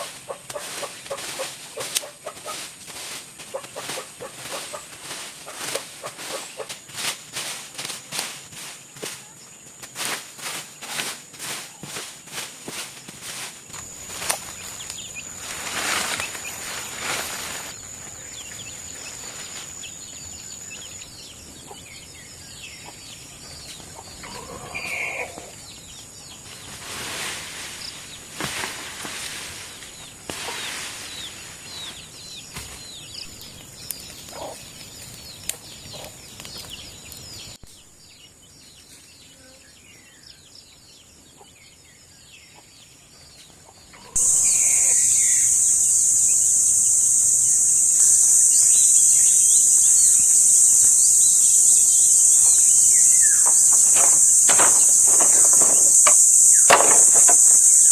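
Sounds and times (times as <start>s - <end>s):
chickens clucking: 0.0s - 6.9s, 23.8s - 25.6s, 34.3s - 34.6s, 49.3s - 57.9s
small birds chirping: 0.0s - 12.8s, 13.7s - 28.4s, 29.0s - 57.9s
brief rustling: 51.3s - 57.9s.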